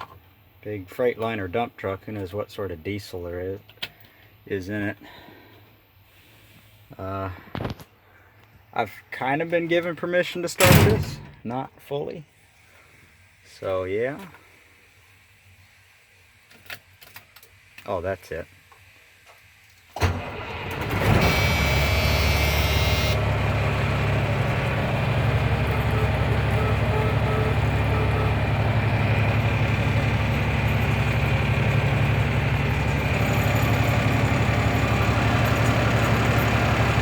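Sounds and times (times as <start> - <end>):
diesel truck engine idling: 20.3 - 37.0.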